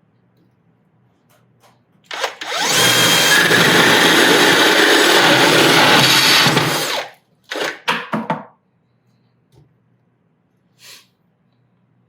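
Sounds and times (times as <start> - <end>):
drill with hole saw cutting: 2.1 - 7.8
brief soft hiss: 10.8 - 11.2.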